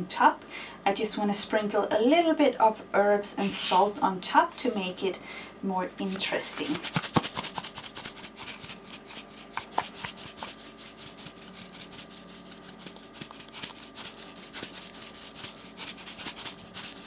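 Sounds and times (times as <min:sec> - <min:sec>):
herbs and salt crackling: 0:04.4 - 0:05.0, 0:06.0 - 0:17.0
fingers rubbing dried herbs: 0:06.0 - 0:17.0.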